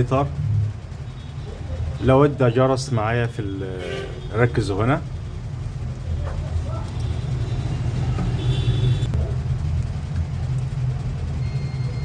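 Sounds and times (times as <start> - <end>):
steady low hum: 0.0 - 11.2.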